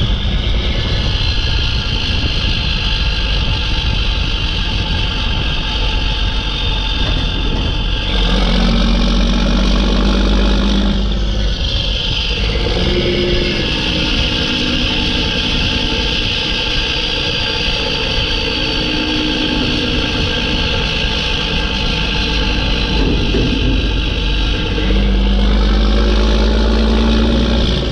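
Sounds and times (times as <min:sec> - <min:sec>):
truck diesel engine accelerating: 0:05.3 - 0:27.9
turbo whistle: 0:07.9 - 0:27.9.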